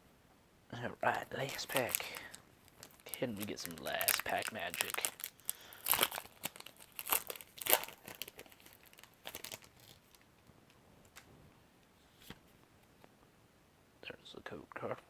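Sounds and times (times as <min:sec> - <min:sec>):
foil pack tearing and crinkling: 0:01.4 - 0:10.0.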